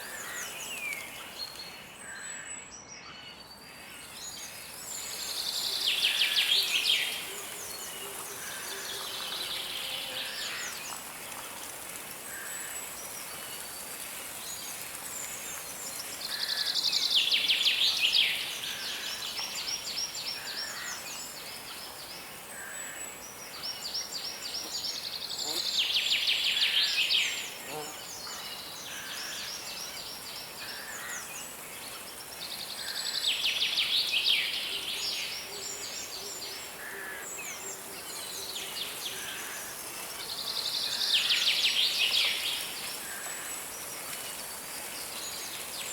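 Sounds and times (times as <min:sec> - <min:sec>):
river water hiss: 0:00.0 - 0:02.5, 0:03.3 - 0:45.9.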